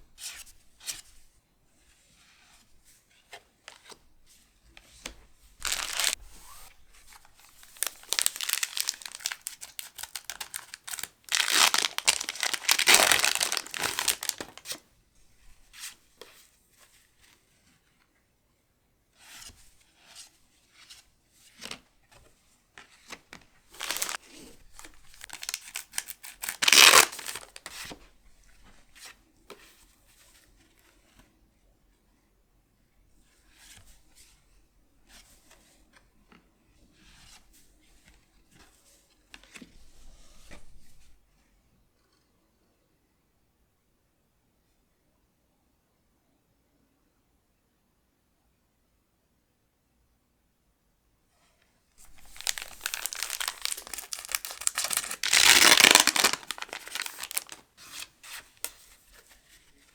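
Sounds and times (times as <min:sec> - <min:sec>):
small rustles: 0:01.8 - 0:14.8, 0:22.8 - 0:29.0, 0:51.4 - 0:59.9
foil wrappers tearing and crinkling: 0:05.6 - 0:06.2, 0:07.6 - 0:14.7, 0:23.7 - 0:24.2, 0:24.8 - 0:27.6, 0:52.1 - 0:57.6.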